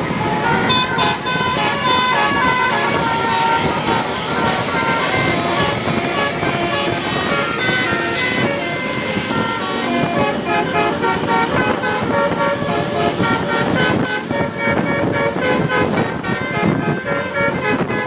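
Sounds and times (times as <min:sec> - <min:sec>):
bus engine: 0:00.0 - 0:18.0
multi-tone bus horn melody: 0:00.0 - 0:18.0
traffic noise: 0:00.0 - 0:18.0.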